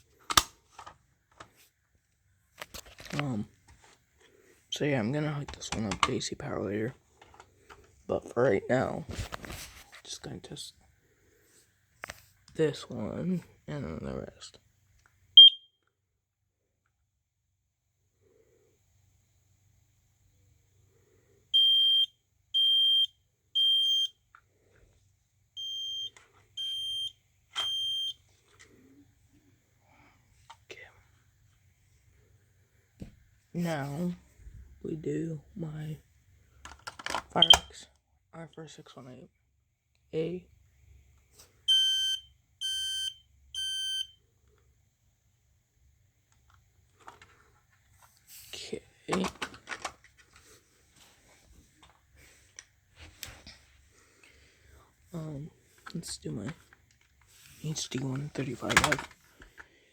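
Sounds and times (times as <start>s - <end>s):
smoke alarm beeps: 15.4s - 15.8s, 21.5s - 24.2s, 25.6s - 28.2s, 37.4s - 37.7s, 41.7s - 44.2s.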